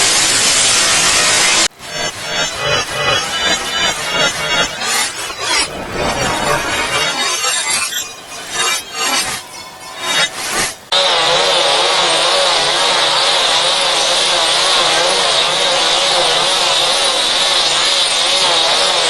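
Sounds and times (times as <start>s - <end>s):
dense distorted buzzing: 0.6s - 10.9s.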